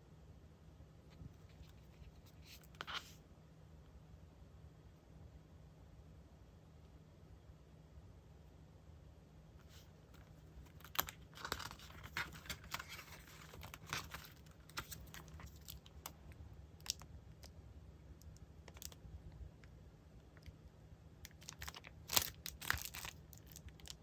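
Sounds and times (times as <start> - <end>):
paper crinkling: 9.6 - 16.2, 21.3 - 24.0.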